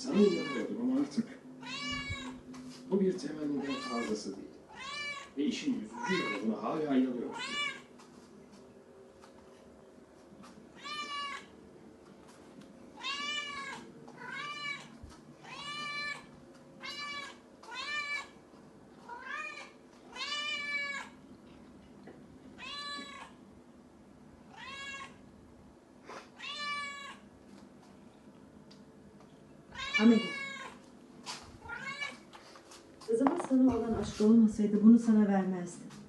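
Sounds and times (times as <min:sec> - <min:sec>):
cat meowing: 0:00.0 - 0:00.8, 0:01.6 - 0:02.5, 0:03.6 - 0:06.6, 0:07.3 - 0:07.9, 0:10.7 - 0:11.5, 0:13.0 - 0:18.4, 0:19.0 - 0:21.2, 0:22.6 - 0:23.4, 0:24.5 - 0:25.2, 0:26.4 - 0:27.2, 0:29.7 - 0:30.8, 0:31.6 - 0:32.3.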